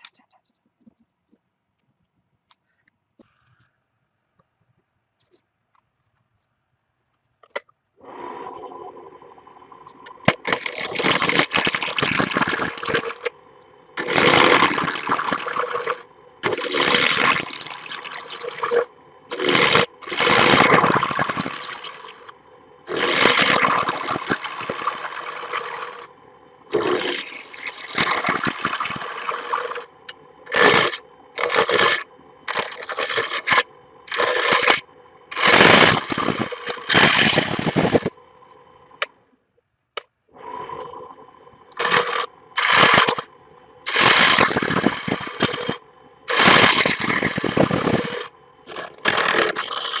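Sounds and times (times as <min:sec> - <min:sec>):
power tool motor hum: 0:09.9 - 0:13.3, 0:14.0 - 0:22.3, 0:22.9 - 0:26.1, 0:26.7 - 0:38.1, 0:41.7 - 0:43.3, 0:43.9 - 0:50.0
power tool cutting wood: 0:10.2 - 0:13.3, 0:14.0 - 0:22.3, 0:22.9 - 0:26.1, 0:26.7 - 0:29.9, 0:30.5 - 0:38.1, 0:41.7 - 0:43.3, 0:43.9 - 0:50.0.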